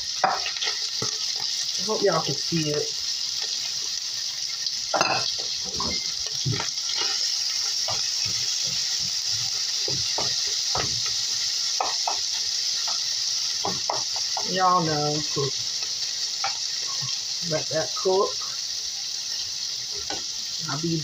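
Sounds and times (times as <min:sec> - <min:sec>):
food sizzling in a pan: 0:00.0 - 0:21.0
utensil scraping a pan: 0:05.0 - 0:11.2.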